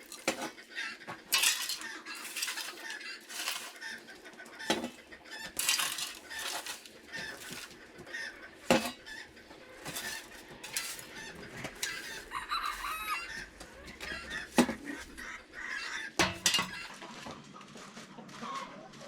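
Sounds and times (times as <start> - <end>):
chickens clucking: 0.0 - 19.0.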